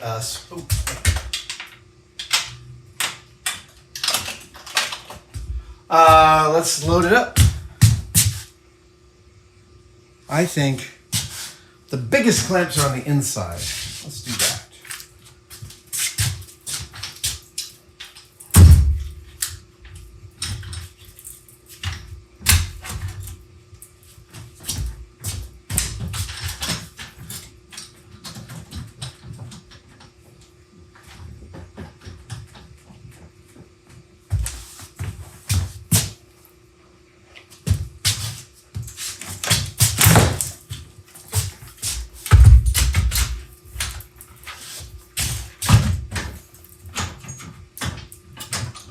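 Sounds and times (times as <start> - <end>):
faint steady hum: 0.0 - 48.9
heavy thud: 18.6 - 19.3, 42.3 - 43.4.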